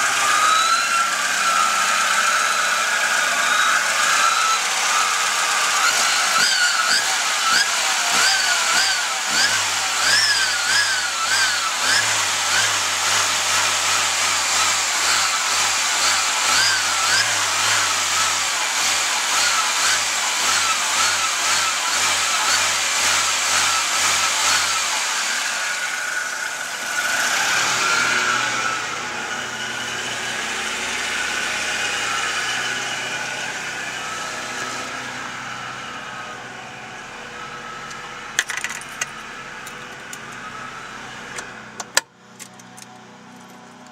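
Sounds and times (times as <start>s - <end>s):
car engine running: 0.0s - 43.9s.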